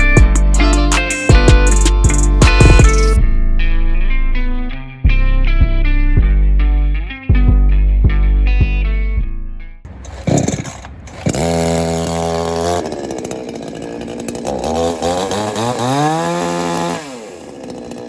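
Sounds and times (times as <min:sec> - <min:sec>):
chainsaw engine revving: 0:09.9 - 0:18.0.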